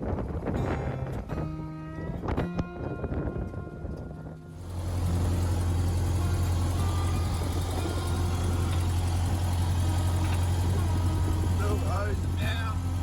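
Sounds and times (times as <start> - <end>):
car engine running: 3.8 - 13.0.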